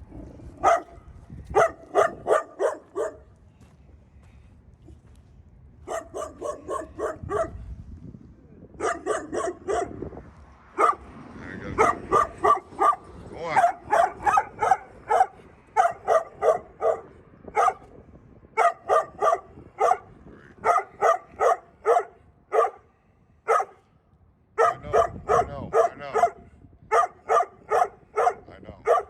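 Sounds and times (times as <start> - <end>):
dog barking: 0.6 - 3.3, 5.8 - 7.6, 8.8 - 10.0, 10.8 - 11.1, 11.7 - 17.9, 18.6 - 23.9, 24.6 - 29.0.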